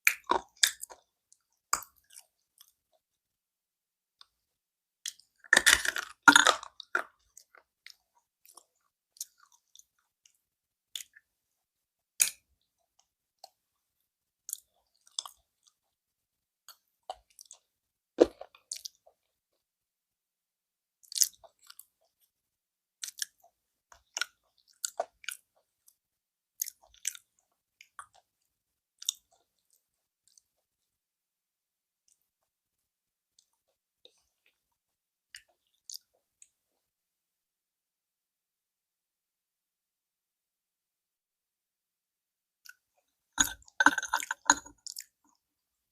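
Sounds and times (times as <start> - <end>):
chewing crunch: 0.1 - 2.8, 5.1 - 10.4, 14.5 - 15.8, 16.7 - 19.2, 21.0 - 22.1, 23.0 - 25.6, 26.6 - 28.3, 29.0 - 30.5, 43.4 - 45.4
sharp crackles of chewing: 16.7 - 19.2, 21.0 - 22.2, 23.0 - 26.0, 26.6 - 28.3, 29.0 - 30.6, 43.4 - 45.4.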